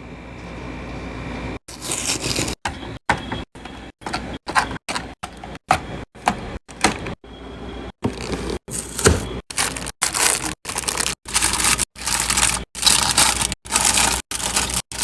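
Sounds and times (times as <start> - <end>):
packaging rustling: 8.1 - 15.0.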